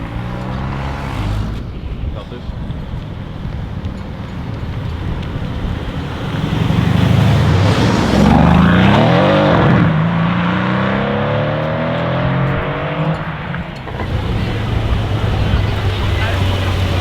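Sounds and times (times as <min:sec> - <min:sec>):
car engine accelerating: 0:00.0 - 0:17.0.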